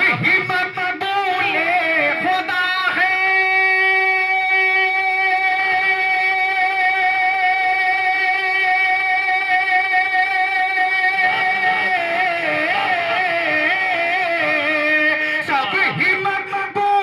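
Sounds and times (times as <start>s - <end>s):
man singing over pa system: 0.0s - 17.0s.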